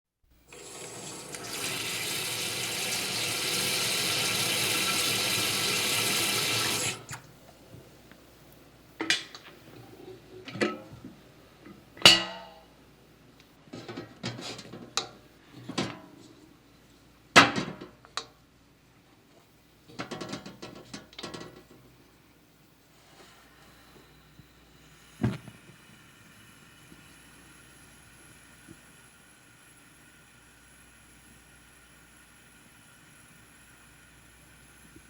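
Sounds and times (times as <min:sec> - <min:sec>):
tap water running into kettle: 0:00.5 - 0:07.2.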